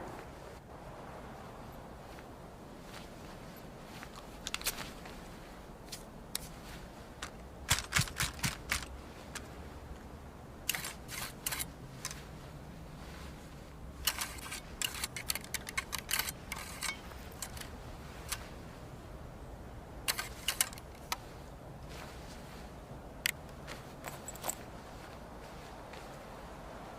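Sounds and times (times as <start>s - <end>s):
rifle action clicking: 7.2s - 9.4s, 10.7s - 12.2s, 14.0s - 17.7s, 20.1s - 21.2s.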